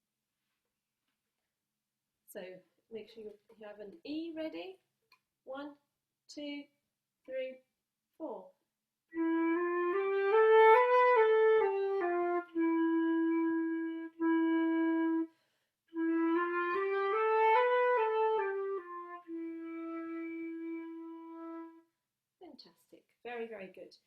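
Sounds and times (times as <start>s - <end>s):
flute playing: 9.1s - 15.3s, 15.9s - 21.9s.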